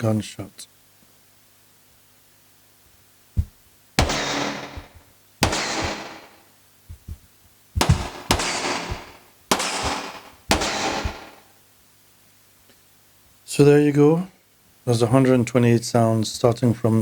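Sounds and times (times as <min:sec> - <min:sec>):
synthesized gunshots with hissing tail: 0:03.4 - 0:07.2, 0:07.8 - 0:11.5.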